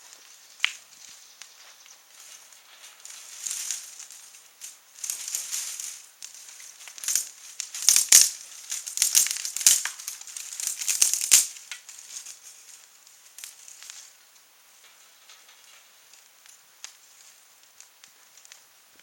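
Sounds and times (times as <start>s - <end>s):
twig fire crackling and popping: 0.1s - 19.0s.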